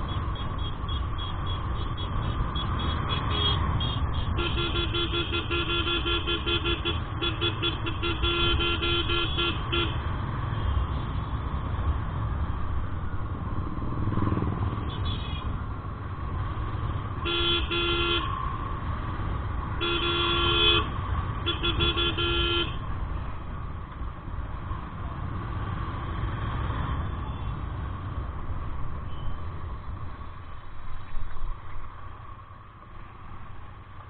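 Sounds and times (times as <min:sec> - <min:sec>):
engine and wind rumble: 0:00.0 - 0:34.0
vehicle horn honking: 0:00.4 - 0:10.0, 0:17.2 - 0:18.3, 0:19.8 - 0:22.8.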